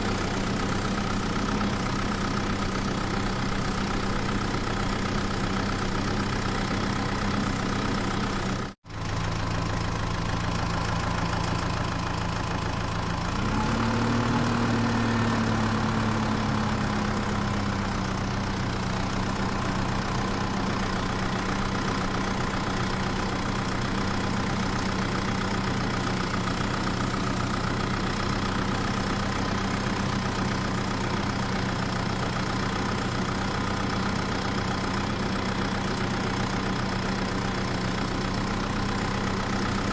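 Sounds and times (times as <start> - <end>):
engine idling: 0.0 - 39.9
engine revving: 13.1 - 17.9.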